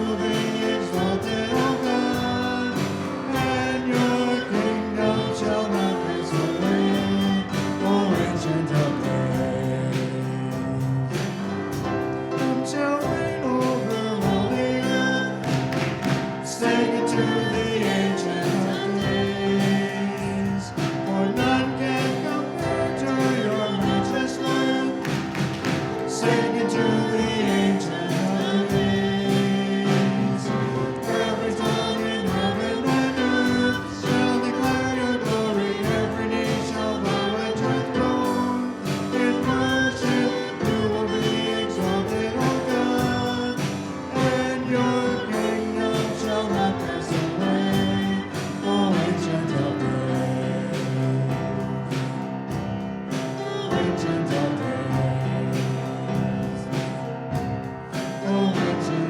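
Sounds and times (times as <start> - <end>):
congregation singing a hymn: 0.0 - 59.0
instrumental accompaniment: 0.0 - 59.0.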